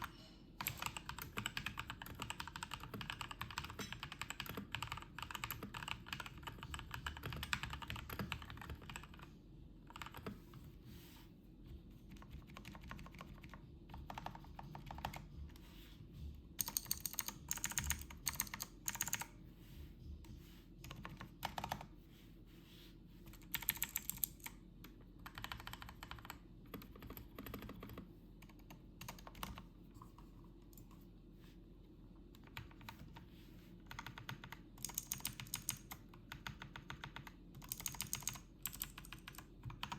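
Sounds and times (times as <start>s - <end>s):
mechanical keyboard typing: 0.0s - 10.4s, 12.1s - 15.3s, 16.6s - 19.3s, 20.8s - 21.9s, 23.3s - 30.2s, 33.9s - 39.9s.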